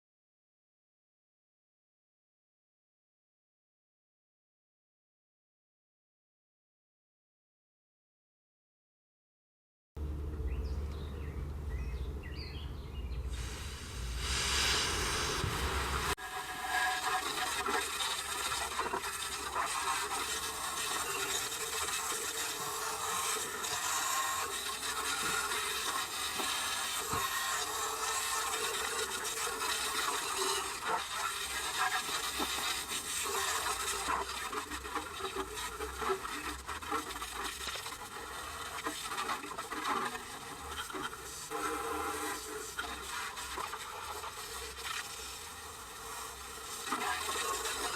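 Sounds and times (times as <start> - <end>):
broad hiss: 13.3 - 18.7.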